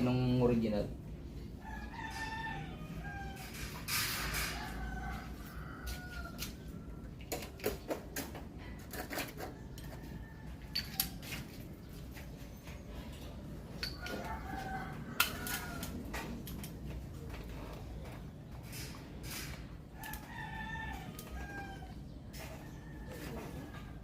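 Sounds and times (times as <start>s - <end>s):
rooster crowing: 1.6s - 7.0s, 13.9s - 16.2s, 20.0s - 24.0s.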